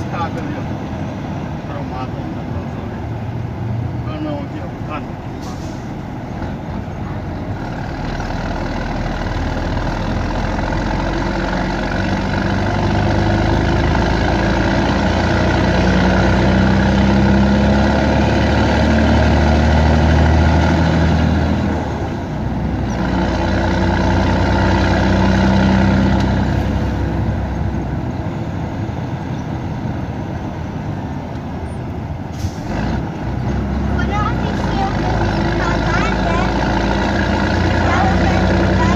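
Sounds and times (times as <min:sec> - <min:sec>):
truck diesel engine pulling hard: 0:00.0 - 0:38.9.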